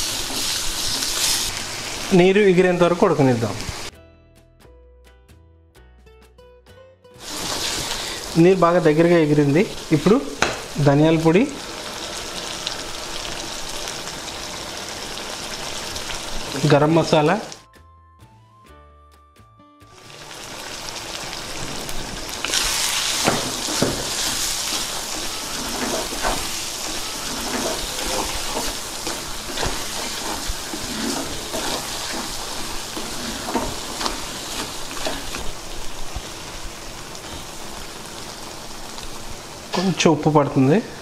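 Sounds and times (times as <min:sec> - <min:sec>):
spatula scraping a pan: 0:00.0 - 0:01.5, 0:22.5 - 0:35.6
prawns sizzling in a pan: 0:00.0 - 0:03.9, 0:07.2 - 0:17.6, 0:19.9 - 0:41.0.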